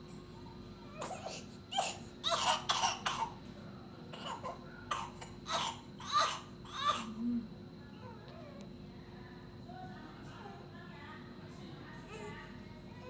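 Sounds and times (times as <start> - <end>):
wet phlegmy coughing: 1.0 - 3.4, 4.1 - 7.2.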